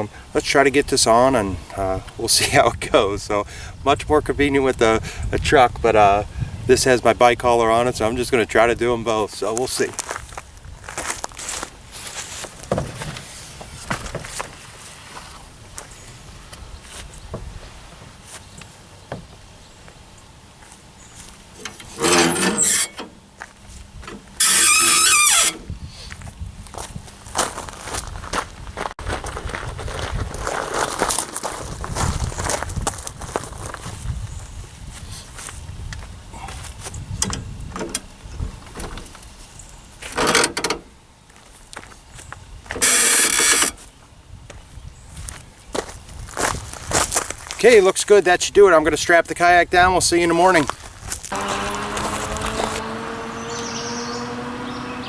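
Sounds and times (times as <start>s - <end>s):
kayak hull scraping squeal: 21.7s - 23.1s, 24.4s - 25.7s, 42.8s - 43.7s, 51.3s - 55.0s
rasping ratchet pulls: 21.7s - 23.1s, 24.4s - 25.6s, 42.8s - 43.7s.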